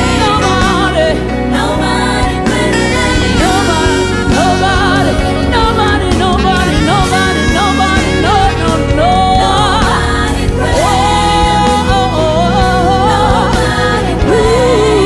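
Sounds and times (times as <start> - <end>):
gospel worship music: 0.0 - 15.0.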